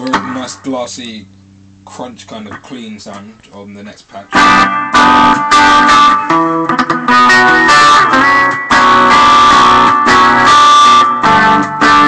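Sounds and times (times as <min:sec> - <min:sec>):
electric guitar picked notes: 0:00.0 - 0:03.4, 0:04.2 - 0:12.0
electric guitar chord ringing: 0:04.3 - 0:12.0.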